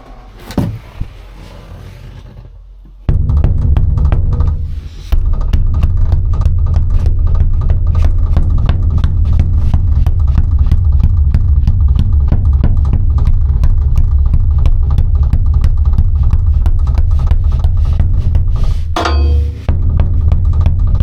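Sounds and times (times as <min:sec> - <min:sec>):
music with heavy bass: 0:03.1 - 0:15.6.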